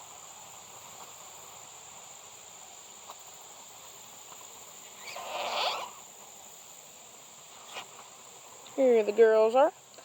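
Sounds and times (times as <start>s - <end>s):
high insect-like whine: 0.0s - 10.0s
squeaky scraping rustle: 4.8s - 6.0s, 7.5s - 8.1s.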